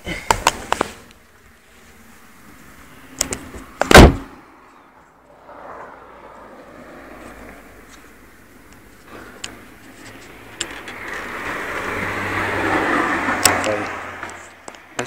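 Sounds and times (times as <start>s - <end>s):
car door slamming: 3.8s - 4.4s.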